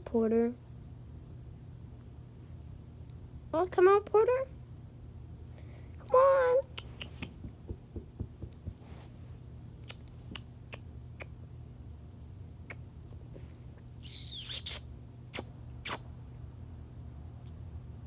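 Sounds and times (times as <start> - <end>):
kissing squeaks: 6.7 - 7.4, 9.8 - 11.4, 14.0 - 16.1
tongue clicks: 6.7 - 7.4, 9.8 - 11.4, 12.7 - 12.9, 14.1 - 16.1.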